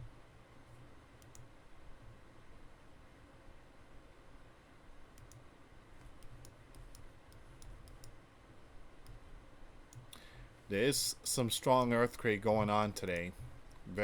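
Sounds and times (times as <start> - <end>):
low background hum: 0.0 - 14.0
computer clicks: 1.2 - 1.5, 5.2 - 8.2, 9.9 - 10.3, 13.0 - 13.4.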